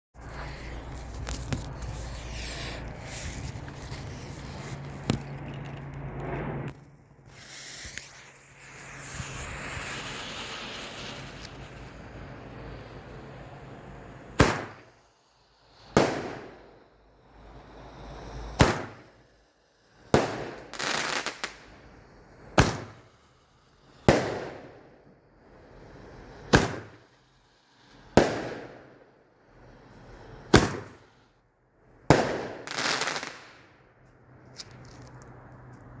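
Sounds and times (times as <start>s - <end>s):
roman candle pops with hiss: 14.4s - 14.9s, 18.4s - 19.0s, 26.5s - 27.0s, 30.5s - 31.0s.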